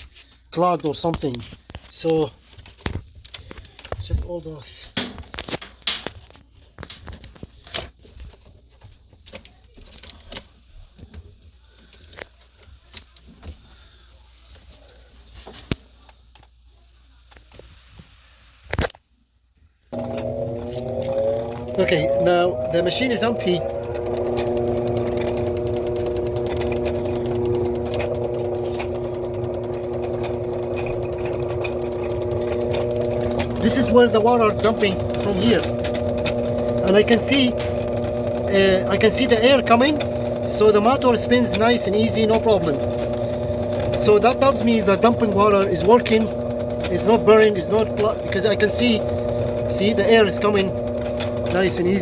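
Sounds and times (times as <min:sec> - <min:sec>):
drain pump motor humming: 0:19.9 - 0:52.0.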